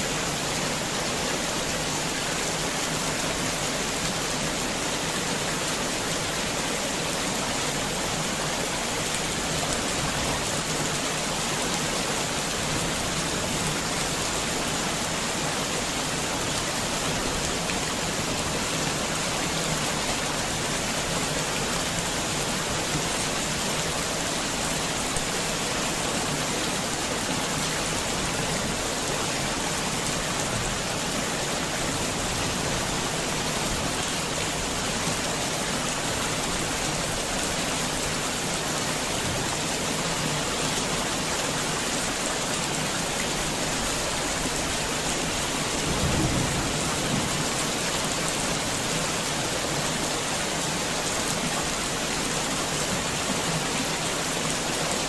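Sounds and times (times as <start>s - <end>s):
heavy rain hissing: 0.0s - 55.0s.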